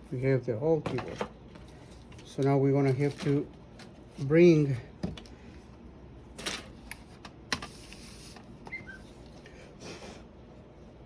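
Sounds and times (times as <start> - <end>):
faint squeak: 8.7 - 9.2.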